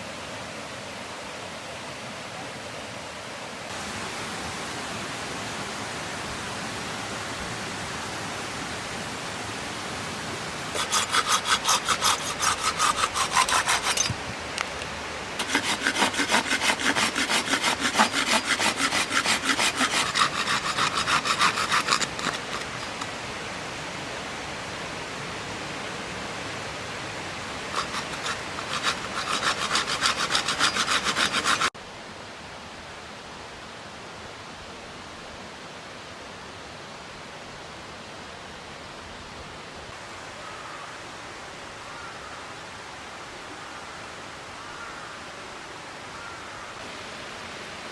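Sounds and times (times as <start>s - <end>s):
steady background hiss: 0.0s - 27.8s, 28.4s - 47.9s
hand saw cutting firewood: 10.8s - 14.3s, 15.4s - 23.2s, 27.7s - 31.8s.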